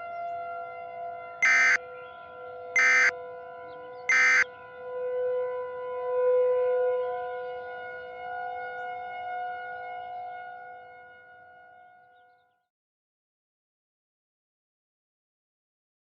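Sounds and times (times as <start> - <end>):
outdoor warning siren: 0.0 - 12.7
digital data bursts: 1.4 - 1.8, 2.8 - 3.1, 4.1 - 4.4.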